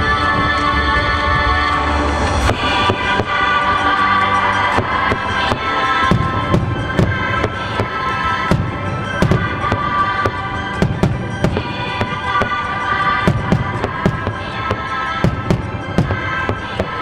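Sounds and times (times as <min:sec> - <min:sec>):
music playing: 0:00.0 - 0:17.0
fireworks booming: 0:04.7 - 0:17.0.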